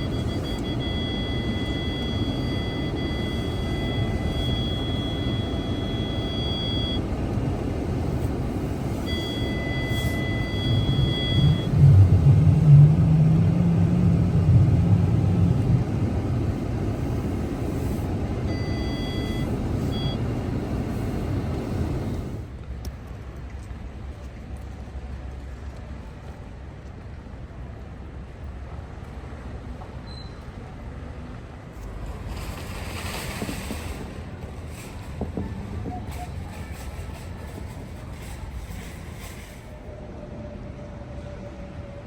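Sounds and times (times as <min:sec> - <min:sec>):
faint high steady tone: 0:00.0 - 0:07.1, 0:09.0 - 0:11.7
car engine and road noise: 0:00.0 - 0:42.0.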